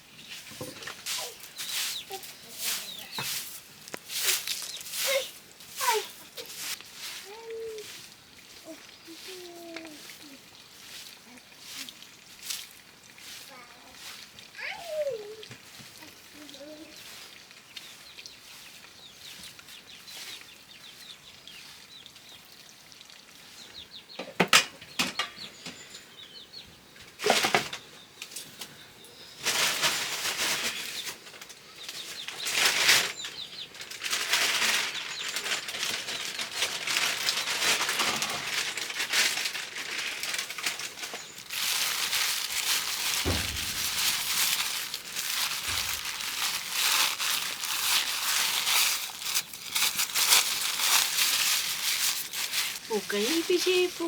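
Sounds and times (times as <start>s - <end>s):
plastic sheeting crinkling: 0.5s - 8.0s, 29.4s - 54.0s.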